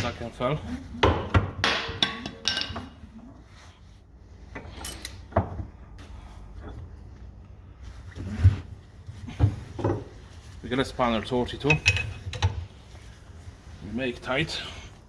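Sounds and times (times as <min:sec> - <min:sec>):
metal parts clinking and knocking: 0:04.8 - 0:05.2.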